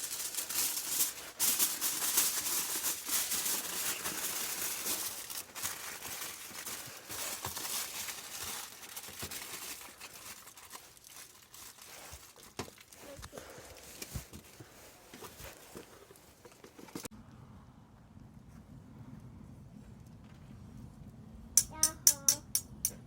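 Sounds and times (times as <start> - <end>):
aluminium foil crinkling: 0.0 - 17.1.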